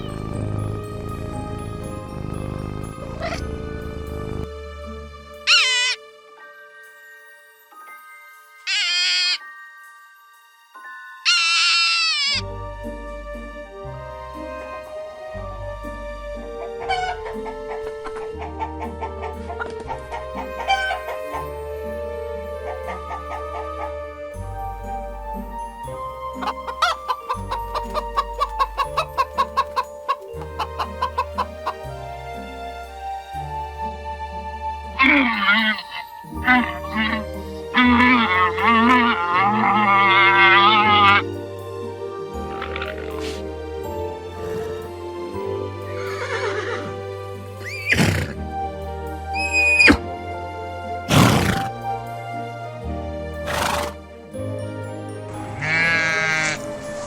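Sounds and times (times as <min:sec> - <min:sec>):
background music: 0:00.0 - 0:57.0
horse neighing: 0:05.5 - 0:06.0, 0:35.0 - 0:41.3, 0:42.4 - 0:43.4, 0:44.4 - 0:44.9, 0:45.9 - 0:46.9, 0:47.6 - 0:48.4, 0:49.4 - 0:50.0, 0:51.1 - 0:51.7, 0:53.4 - 0:54.0, 0:55.5 - 0:57.0
chicken clucking: 0:26.4 - 0:31.8
horse breathy snorts: 0:42.7 - 0:43.5, 0:44.4 - 0:44.9, 0:51.1 - 0:51.7.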